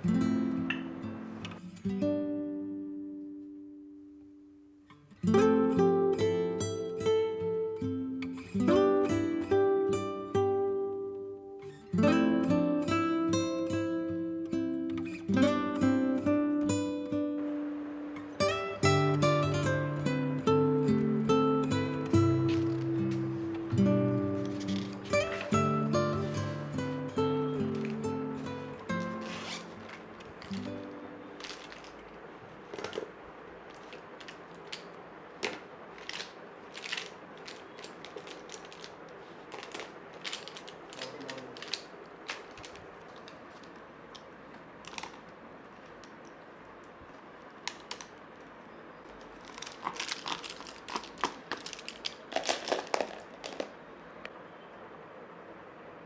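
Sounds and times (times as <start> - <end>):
faint room hiss: 0.0 - 56.0
small objects tapping and clicking: 49.2 - 53.8.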